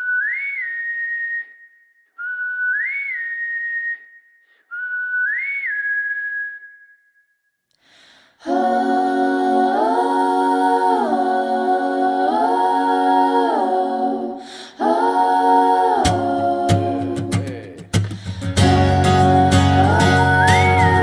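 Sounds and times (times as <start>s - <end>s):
held whistle note: 0.0s - 7.2s, 20.1s - 21.0s.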